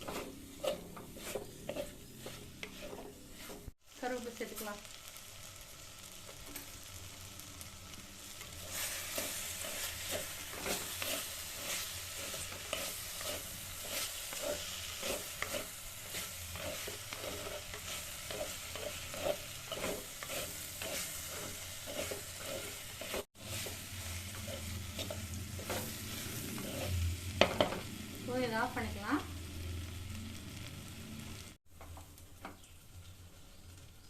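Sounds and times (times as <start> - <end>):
spoon stirring in pan: 0.0 - 3.8, 8.4 - 27.8
food sizzling in oily pan: 0.0 - 34.0.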